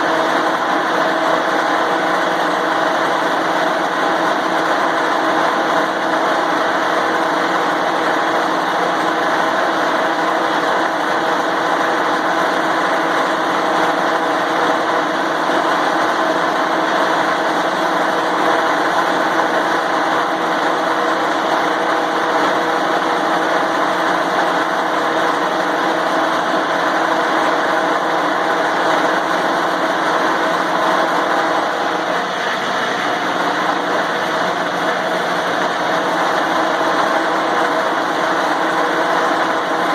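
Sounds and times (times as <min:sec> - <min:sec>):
angle grinder whining: 0:25.0 - 0:39.9.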